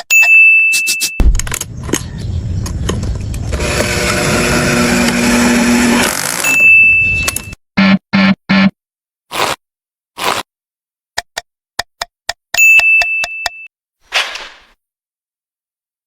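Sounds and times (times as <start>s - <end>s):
small motor running: 3.4s - 6.5s.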